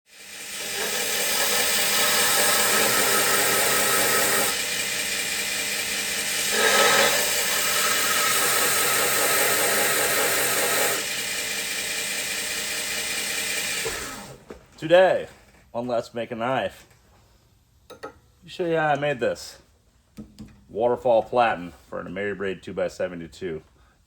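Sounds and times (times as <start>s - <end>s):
belt grinder grinding steel: 0.1s - 14.4s.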